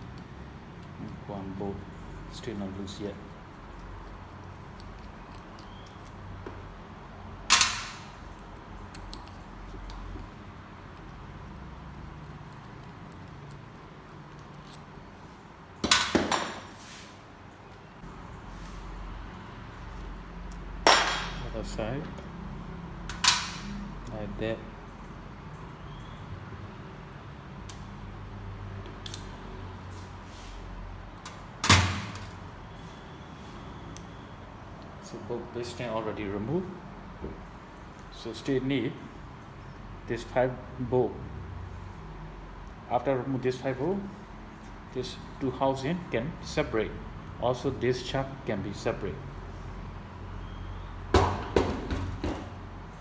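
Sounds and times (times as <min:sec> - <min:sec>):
metal clank with ring: 0:20.9 - 0:21.6.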